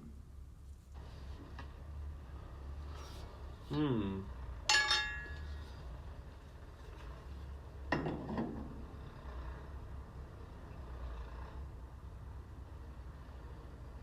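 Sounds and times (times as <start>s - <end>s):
metal parts knocking together: 4.7s - 5.4s.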